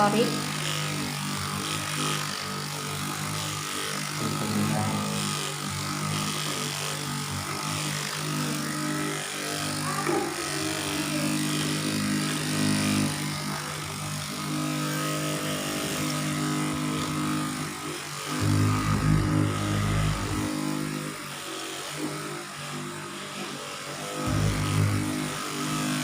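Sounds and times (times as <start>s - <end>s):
motor humming: 0.0s - 26.0s.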